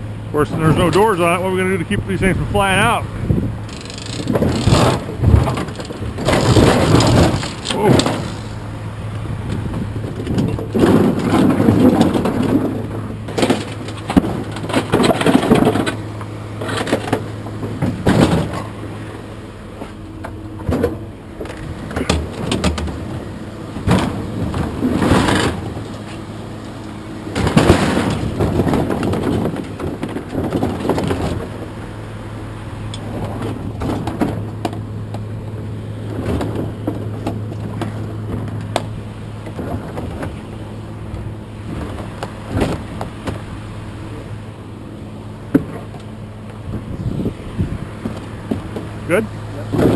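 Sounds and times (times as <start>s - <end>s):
vehicle engine running: 0.0s - 49.9s
scrap metal clanking and banging: 4.0s - 8.6s.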